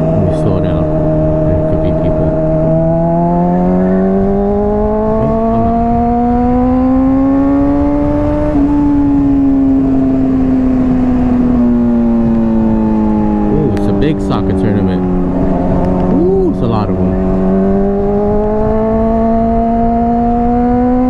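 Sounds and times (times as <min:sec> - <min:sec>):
low wind rumble: 0:00.0 - 0:21.0
motorcycle engine revving: 0:00.0 - 0:21.0.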